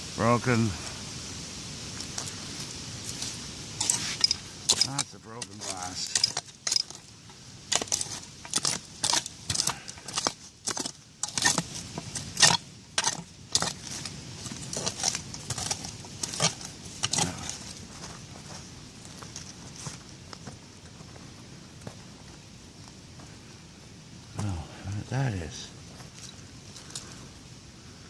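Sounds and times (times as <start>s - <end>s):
digging and raking soil: 1.9s - 22.5s.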